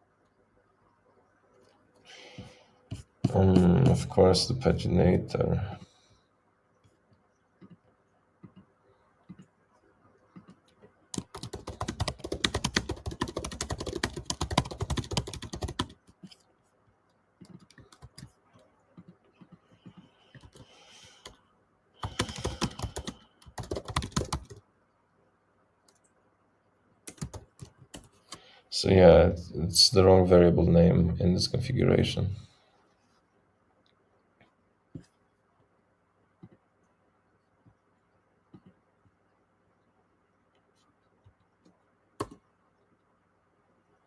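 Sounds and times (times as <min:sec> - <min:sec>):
typing on computer keyboard: 0:10.4 - 0:16.2, 0:17.4 - 0:18.4, 0:22.0 - 0:24.6, 0:27.1 - 0:28.4, 0:42.2 - 0:42.4.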